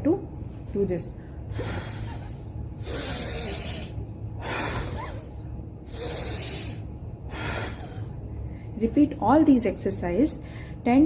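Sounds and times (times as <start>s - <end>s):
quiet breaths drawn in: 1.1s - 8.8s
person blowing out hard: 1.5s - 8.1s.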